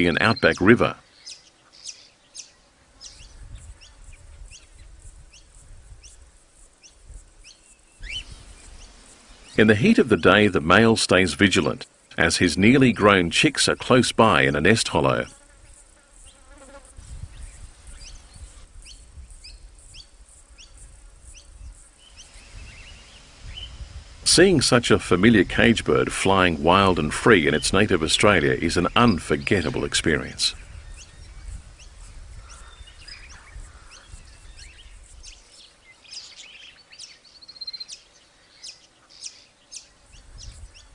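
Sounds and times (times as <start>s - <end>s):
birds chirping: 0.0s - 40.9s
bird trill: 0.1s - 6.2s, 6.8s - 9.8s, 30.7s - 40.9s.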